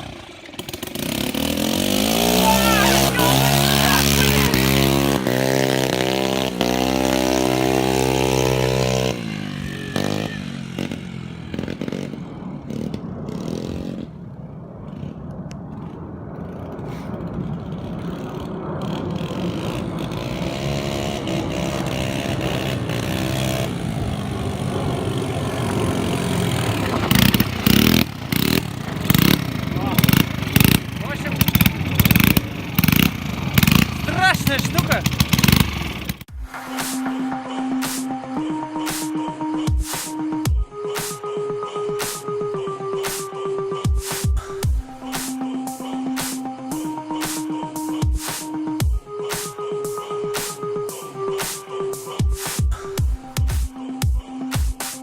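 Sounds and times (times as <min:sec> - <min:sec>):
scooter engine revving: 0:00.0 - 0:15.8, 0:16.4 - 0:40.6.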